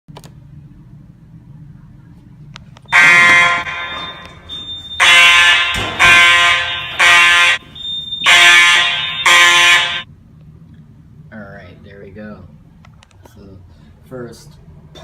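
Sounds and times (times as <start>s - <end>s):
fire alarm horn blasts: 2.9s - 10.1s.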